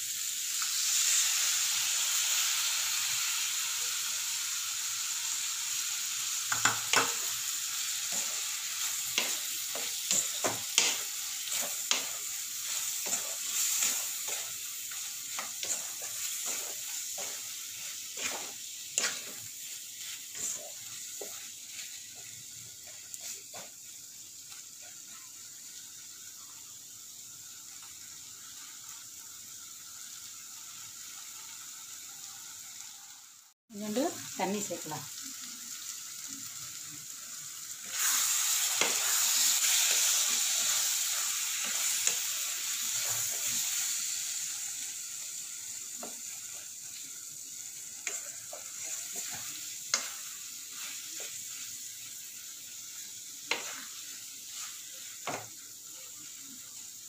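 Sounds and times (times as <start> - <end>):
gravy sizzling in a hot pan: 0.0 - 57.0
spoon stirring in a pan: 6.5 - 23.9, 47.8 - 52.4, 53.0 - 55.6.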